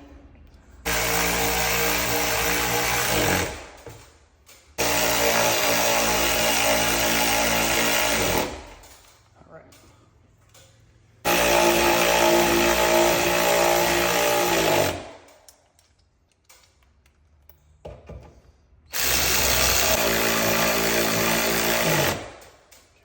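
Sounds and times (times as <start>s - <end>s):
power drill driving screws: 0.9s - 3.8s, 4.8s - 8.8s, 11.3s - 15.2s, 18.9s - 22.4s.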